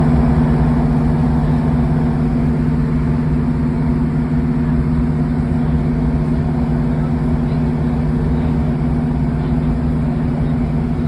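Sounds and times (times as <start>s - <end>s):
train diesel engines droning: 0.0s - 11.0s.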